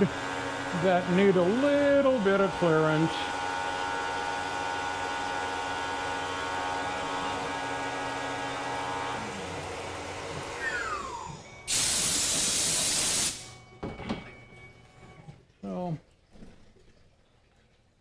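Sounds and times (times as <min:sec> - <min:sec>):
mill spindle whine: 0:00.0 - 0:15.4
hissing air blast: 0:11.7 - 0:13.5.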